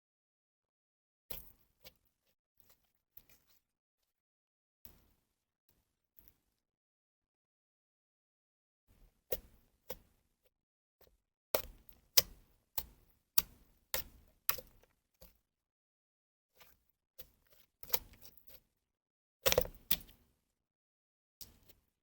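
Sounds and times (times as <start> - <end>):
slime clicking and popping: 19.4 - 20.1.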